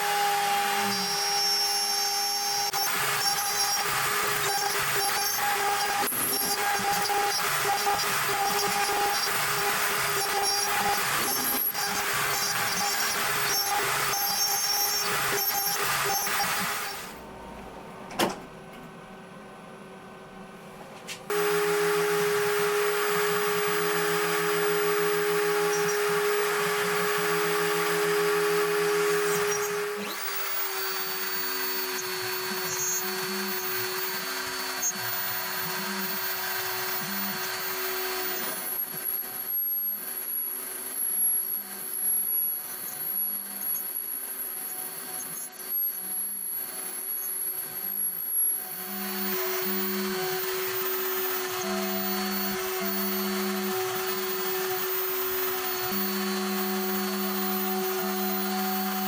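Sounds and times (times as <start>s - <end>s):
router cutting wood: 0.0s - 17.2s, 21.3s - 59.0s
router spindle whining: 0.0s - 18.0s, 21.3s - 59.0s
stepper motors humming: 48.8s - 59.0s.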